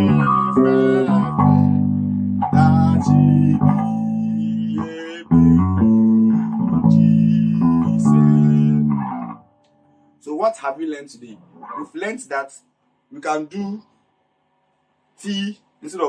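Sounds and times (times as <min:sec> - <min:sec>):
bass guitar melody: 0:00.0 - 0:09.9, 0:11.4 - 0:12.0.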